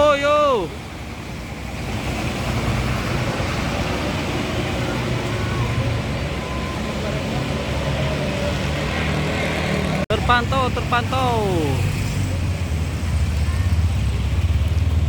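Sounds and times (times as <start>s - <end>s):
bus engine: 0.0s - 15.0s
road traffic noise: 0.0s - 15.0s.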